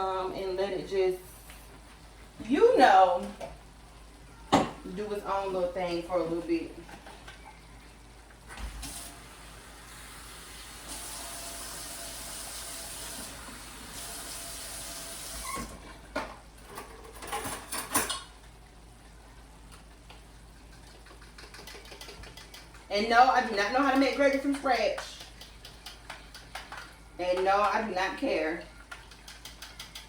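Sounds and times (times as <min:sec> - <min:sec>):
tap running water: 0:08.3 - 0:30.0.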